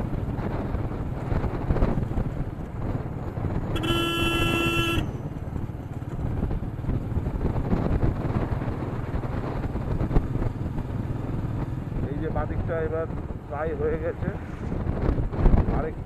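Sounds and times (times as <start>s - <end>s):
motorcycle wind and road rumble: 0.0s - 16.0s
vehicle horn: 3.7s - 5.2s.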